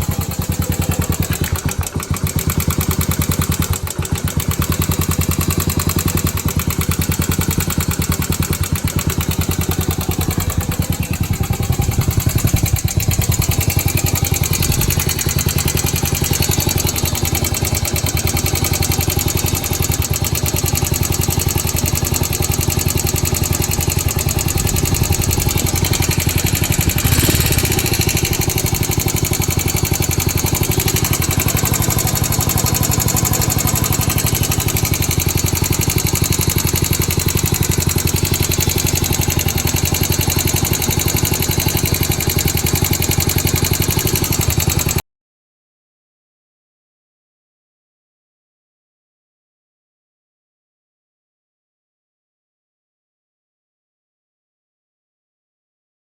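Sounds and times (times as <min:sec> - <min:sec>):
motorcycle engine idling: 0:00.0 - 0:45.0
abnormal mechanical engine noise: 0:07.3 - 0:42.4.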